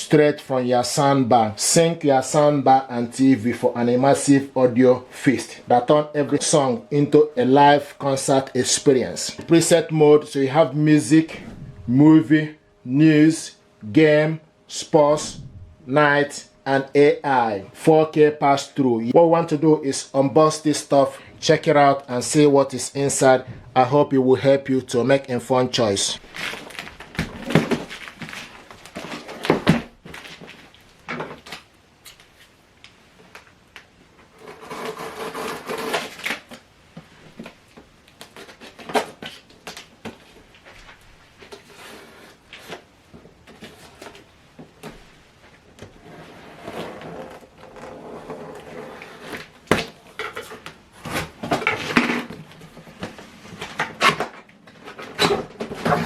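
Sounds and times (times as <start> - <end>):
rustling and scraping: 10.5 - 12.0, 26.2 - 33.6, 34.2 - 56.0.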